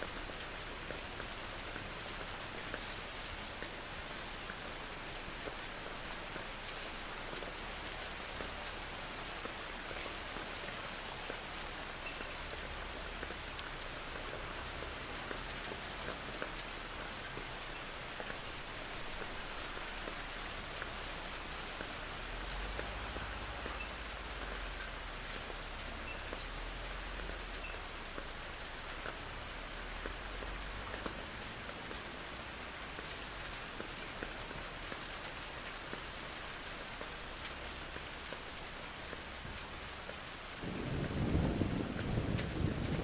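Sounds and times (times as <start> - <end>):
steady rain falling: 0.0 - 43.0
distant thunder rumble: 39.1 - 43.0.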